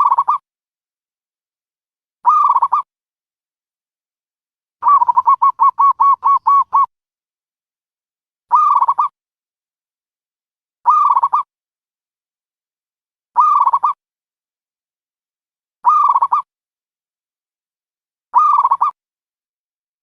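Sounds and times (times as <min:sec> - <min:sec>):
dove cooing: 0:04.8 - 0:06.9.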